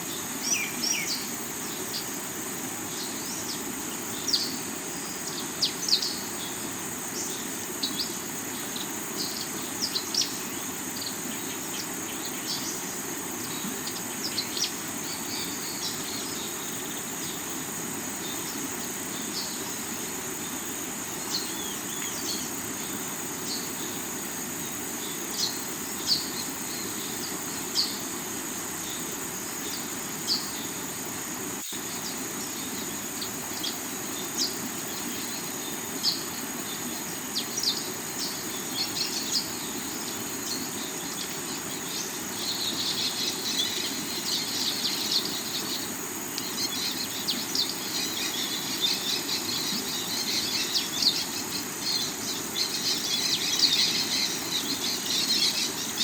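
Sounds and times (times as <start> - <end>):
high insect trill: 0.0 - 56.0.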